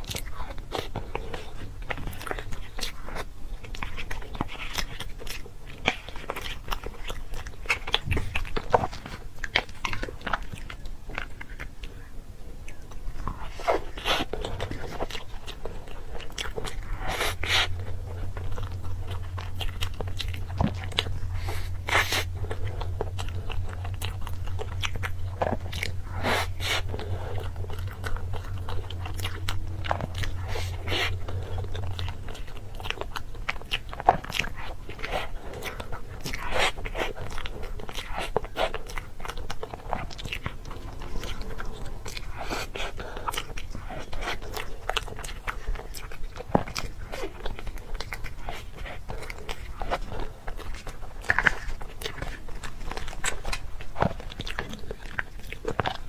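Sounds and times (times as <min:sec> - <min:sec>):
crunchy biting and chewing: 0:00.0 - 0:56.0.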